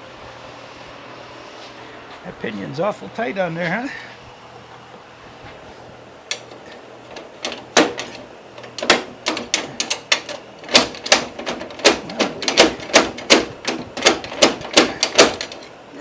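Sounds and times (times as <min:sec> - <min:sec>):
hammer striking metal gear: 0:07.4 - 0:15.6.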